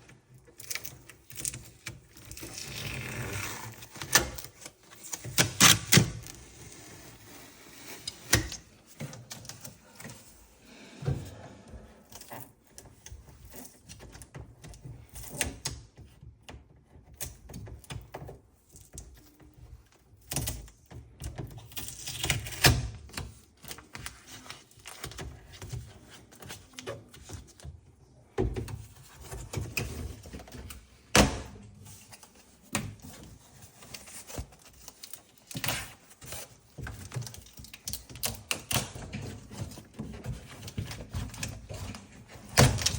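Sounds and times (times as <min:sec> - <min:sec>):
clicks and knocks of handling: 0:07.9 - 0:10.4, 0:12.0 - 0:42.9.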